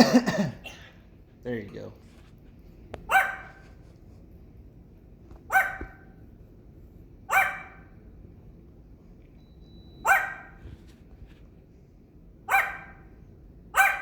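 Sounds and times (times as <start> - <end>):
sharp barks: 3.1 - 3.6, 5.5 - 6.0, 7.3 - 7.8, 12.5 - 13.0, 13.8 - 14.0.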